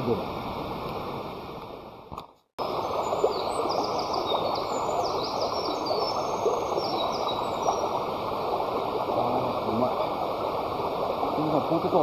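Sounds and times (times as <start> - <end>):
birds chirping: 2.6 - 12.0.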